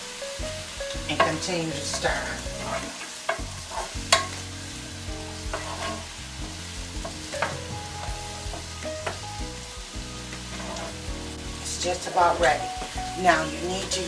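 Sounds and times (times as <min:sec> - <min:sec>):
onions sizzling in fat: 0:00.0 - 0:14.0
utensil knocking and scraping a pot: 0:01.0 - 0:04.4, 0:05.4 - 0:09.2, 0:10.4 - 0:11.0.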